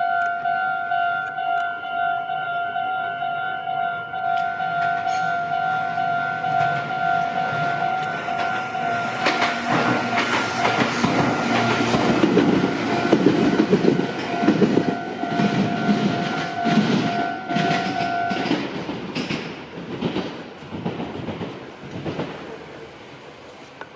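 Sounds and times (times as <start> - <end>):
level crossing warning bell: 0.0 - 19.4
train wheels clattering: 4.3 - 22.7.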